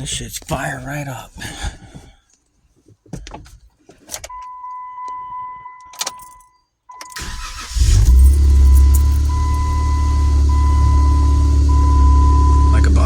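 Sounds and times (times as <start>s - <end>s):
car starter cranking: 7.0s - 12.8s
car engine running: 7.2s - 13.0s
steady high beep: 8.5s - 13.0s.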